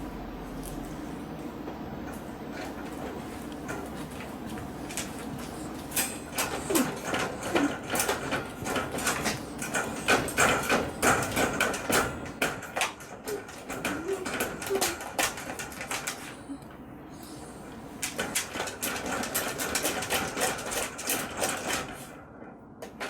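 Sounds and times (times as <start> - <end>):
dog rattling wire cage: 2.5 - 16.3, 18.0 - 22.1
dog whining: 5.6 - 11.0, 13.1 - 17.6.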